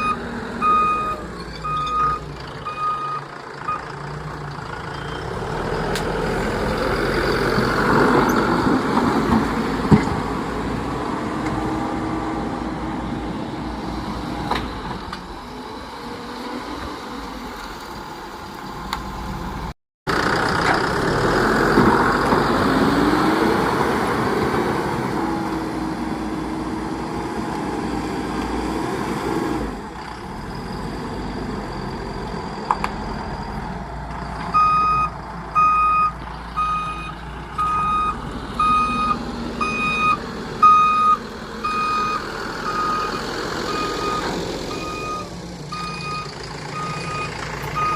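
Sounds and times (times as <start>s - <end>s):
reversing alarm beeping: 0.0s - 3.9s, 34.5s - 47.9s
diesel engine of heavy machinery: 0.0s - 47.9s.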